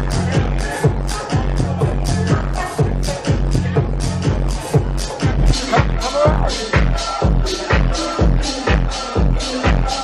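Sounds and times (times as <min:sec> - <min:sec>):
house dance music: 0:00.0 - 0:10.0.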